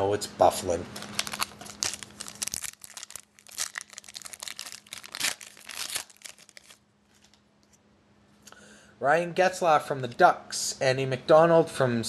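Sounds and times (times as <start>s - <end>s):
foil wrapper crinkling and tearing: 1.0s - 7.4s.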